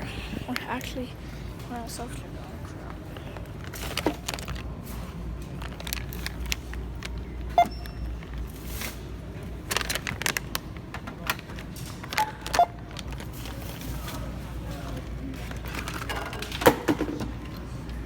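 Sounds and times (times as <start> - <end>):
packaging clattering and rustling: 2.8 - 17.6
barcode scanner beeps: 7.5 - 8.2, 12.2 - 12.9.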